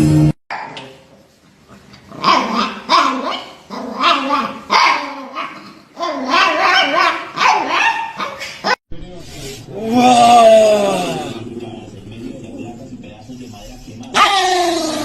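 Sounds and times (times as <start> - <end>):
dog barking: 2.2 - 8.8, 14.1 - 14.8.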